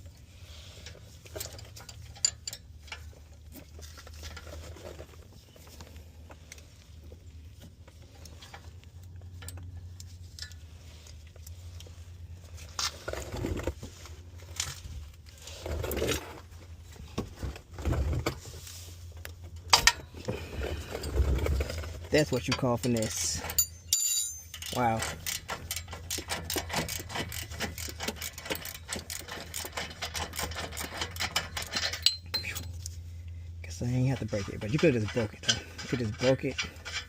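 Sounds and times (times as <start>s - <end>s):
steady low hum: 0.0s - 37.0s
hand tools clinking on metal: 22.3s - 32.8s.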